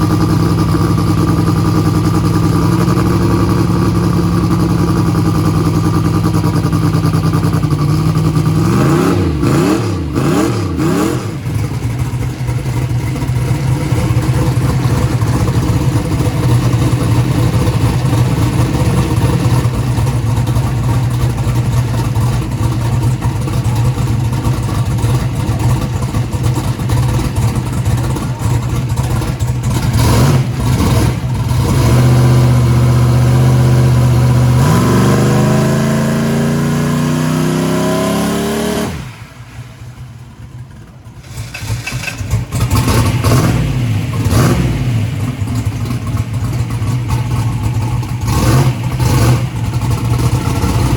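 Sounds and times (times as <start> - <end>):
hot rod engine revving: 0.0 - 50.9.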